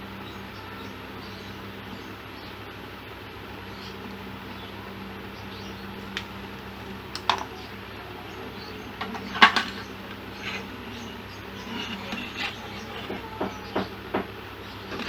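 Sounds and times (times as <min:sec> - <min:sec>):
steady low hum: 0:00.0 - 0:15.0
tools clicking on workbench: 0:09.0 - 0:10.6, 0:11.6 - 0:14.3.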